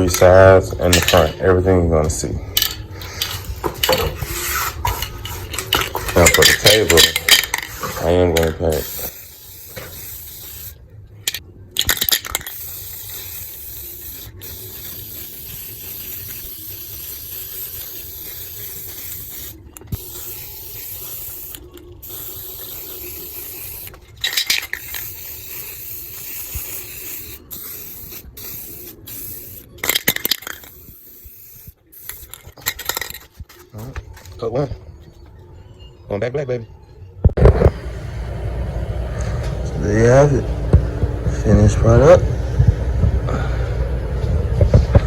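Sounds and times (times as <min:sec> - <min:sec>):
spray paint can hissing: 0:03.1 - 0:33.6.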